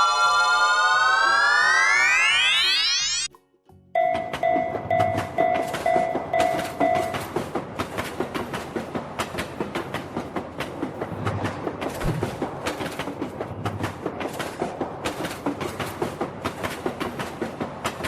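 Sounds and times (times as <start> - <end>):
railroad crossing bell ringing: 4.0 - 7.4
train wheels clacking over rails: 4.1 - 18.0.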